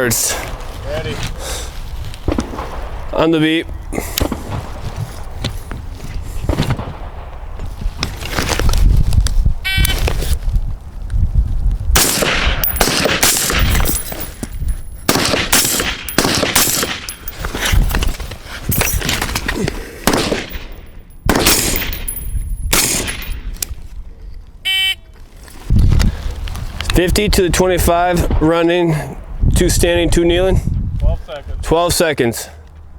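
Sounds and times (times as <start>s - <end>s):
suppressed rifle shots: 12.0s - 13.9s, 15.1s - 17.2s, 20.0s - 23.5s.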